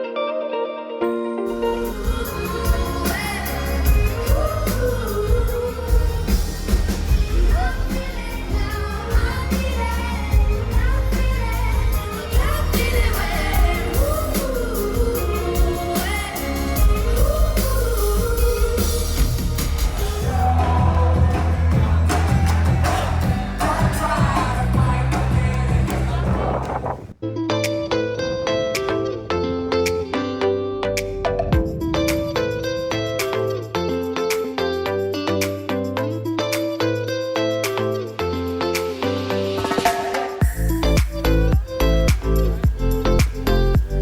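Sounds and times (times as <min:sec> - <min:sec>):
pop song with singing: 0:00.0 - 0:44.0
bass and drum beat: 0:01.7 - 0:27.8, 0:39.6 - 0:44.0.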